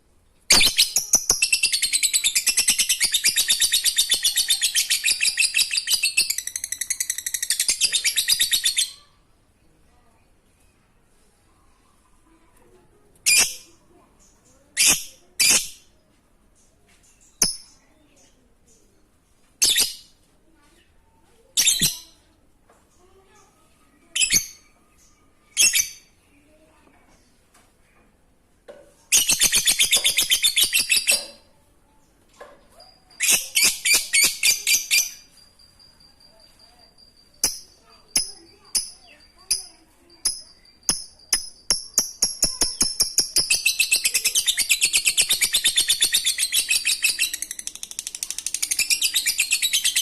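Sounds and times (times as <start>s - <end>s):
lovebird chatter: 0.5s - 9.1s, 29.1s - 31.5s, 33.0s - 35.6s, 36.4s - 50.0s.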